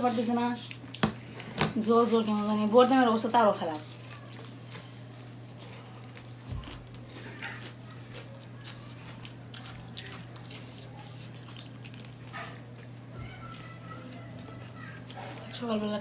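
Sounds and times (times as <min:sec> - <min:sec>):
person chewing: 0:03.7 - 0:15.6.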